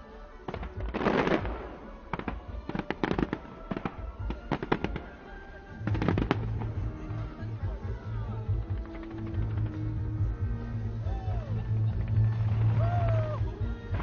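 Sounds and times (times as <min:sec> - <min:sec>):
fireworks bangs and crackles: 0:00.3 - 0:14.0
low rumble: 0:05.8 - 0:14.0.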